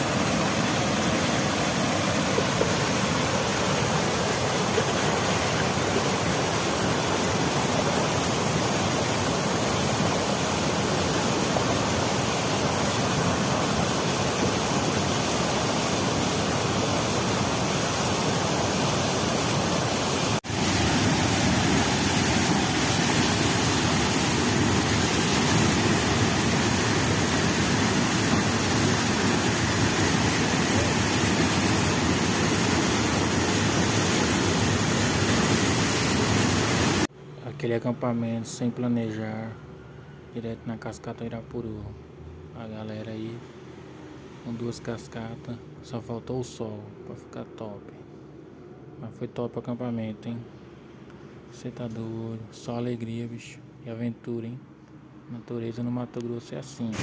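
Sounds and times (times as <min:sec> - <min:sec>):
waterfall rushing: 0:00.0 - 0:37.1.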